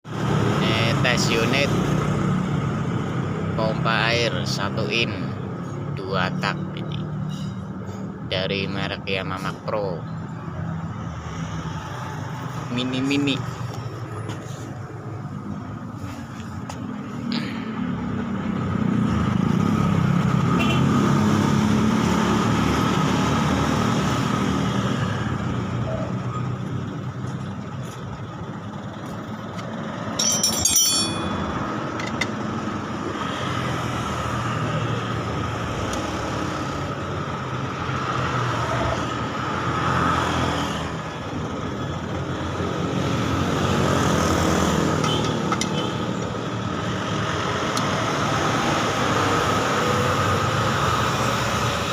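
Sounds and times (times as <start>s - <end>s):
sharp metallic clatter: 30.0s - 32.4s.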